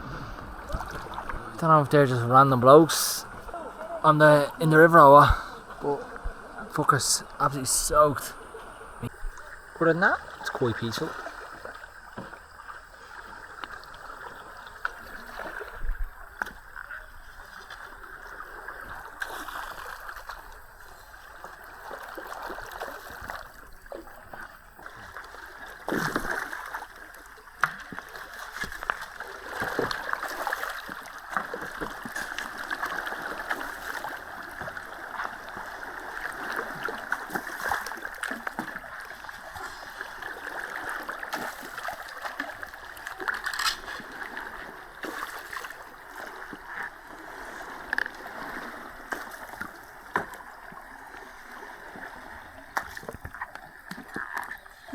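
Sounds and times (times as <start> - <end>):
loud water splashes: 0.0 - 11.7
river water gurgling: 0.0 - 54.9.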